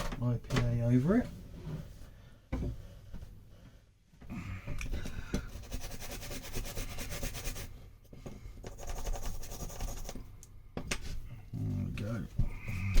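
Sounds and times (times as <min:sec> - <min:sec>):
scratchy scrubbing of circuit board: 0:05.5 - 0:07.7.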